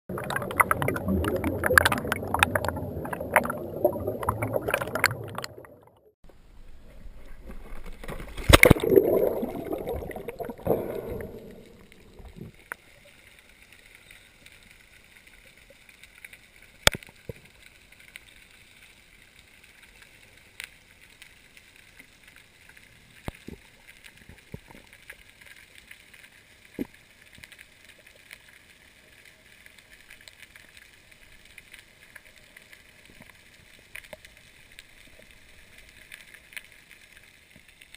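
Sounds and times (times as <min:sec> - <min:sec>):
underwater hush: 0:00.1 - 0:06.1, 0:08.4 - 0:12.6
water splashing and bubbling: 0:00.1 - 0:06.2, 0:08.0 - 0:13.0.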